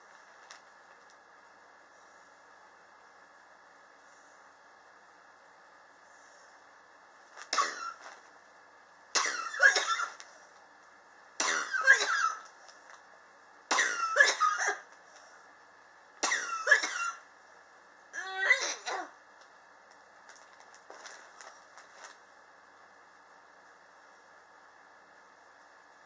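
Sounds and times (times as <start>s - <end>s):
person coughing: 7.5s - 8.0s, 9.2s - 10.2s, 11.4s - 12.4s, 13.7s - 14.9s, 16.2s - 17.2s, 18.4s - 19.1s.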